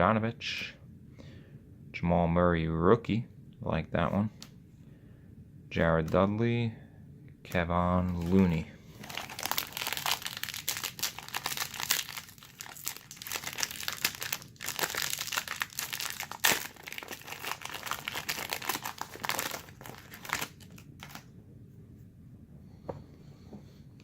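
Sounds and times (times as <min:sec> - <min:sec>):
plastic wrapper crinkling and tearing: 0:08.1 - 0:21.3.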